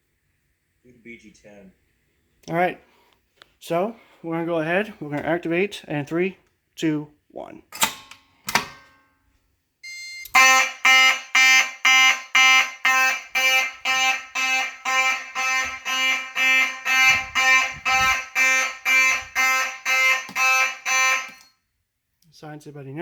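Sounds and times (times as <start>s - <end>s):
faint beep: 9.8s - 10.3s
fire alarm horn pulsing: 9.8s - 21.6s.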